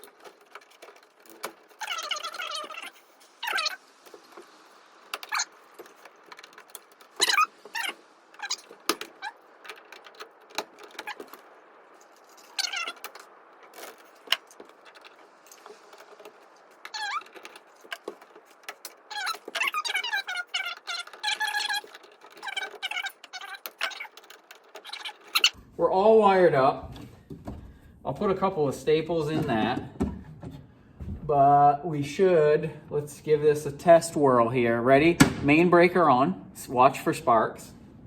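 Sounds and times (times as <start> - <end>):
wavering squeaks: 0.0 - 25.6.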